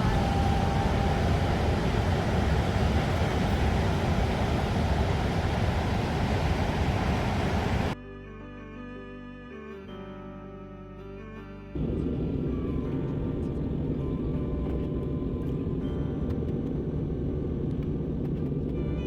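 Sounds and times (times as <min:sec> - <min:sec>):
car driving low rumble: 0:00.0 - 0:08.0, 0:11.8 - 0:19.0
music: 0:08.0 - 0:19.0.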